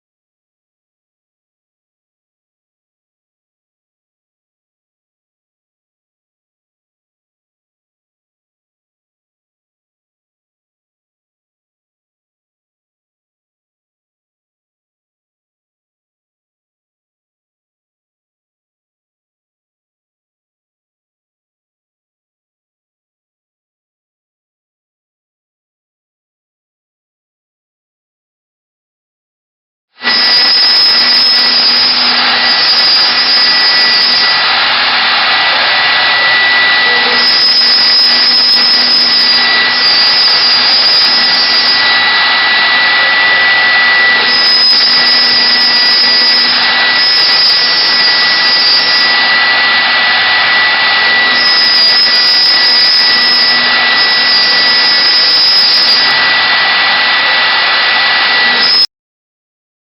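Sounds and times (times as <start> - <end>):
router spindle whine cutting wood: 30.0 - 58.9.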